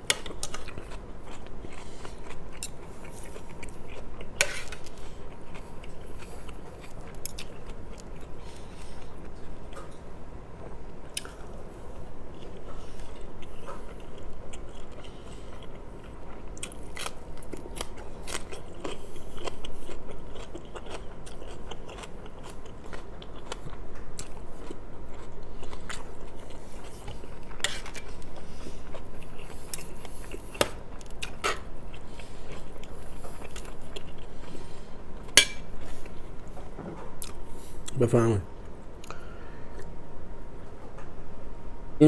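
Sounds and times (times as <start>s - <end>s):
person chewing food: 0.0s - 38.0s.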